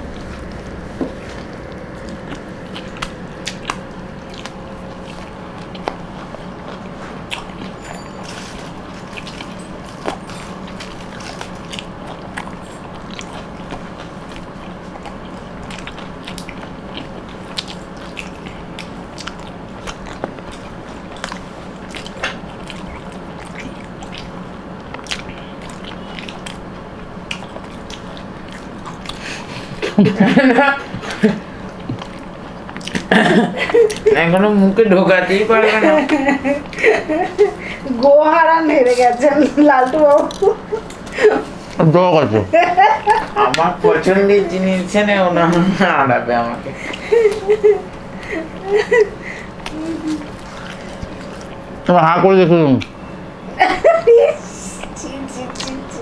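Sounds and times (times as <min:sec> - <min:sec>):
low hum: 0:00.0 - 0:10.1
people chewing and smacking: 0:00.0 - 0:56.0.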